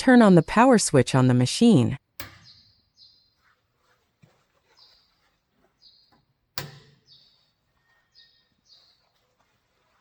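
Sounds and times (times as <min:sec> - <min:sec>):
high falling bird chirps: 0:02.4 - 0:03.5, 0:04.7 - 0:06.2, 0:07.0 - 0:09.2.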